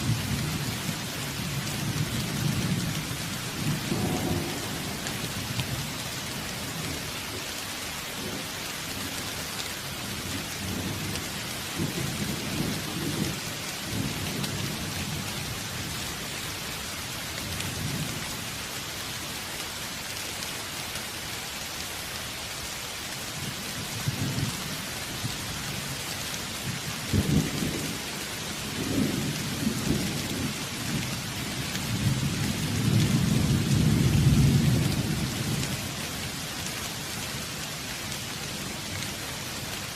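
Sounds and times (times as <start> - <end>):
steady rain: 0.0 - 39.9
thunder rumbling: 1.8 - 7.1.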